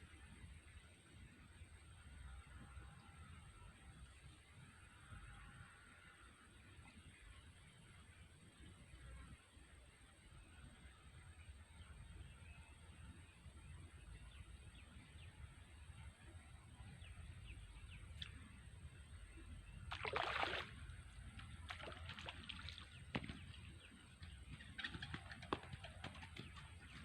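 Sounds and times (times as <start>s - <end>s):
low outdoor rumble: 0.0s - 27.0s
water splash: 19.9s - 20.9s, 21.6s - 23.3s.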